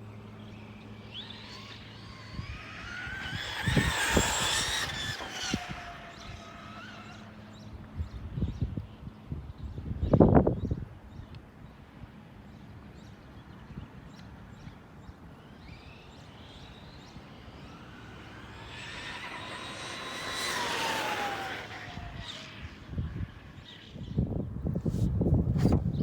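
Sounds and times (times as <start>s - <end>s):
electric motor whining: 0.4s - 7.7s, 15.4s - 24.2s.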